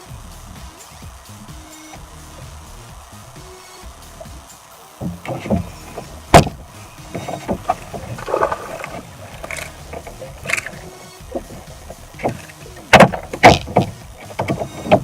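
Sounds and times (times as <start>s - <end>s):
knocks and clunks: 5.0s - 15.0s.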